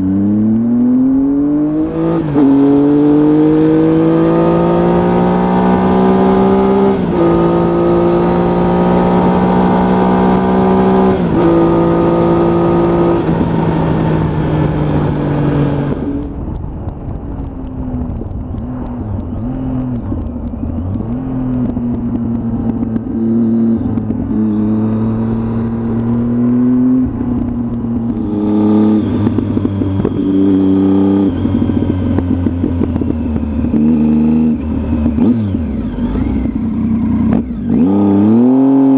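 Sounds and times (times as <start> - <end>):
motorcycle engine shifting gears: 0.0 - 38.9.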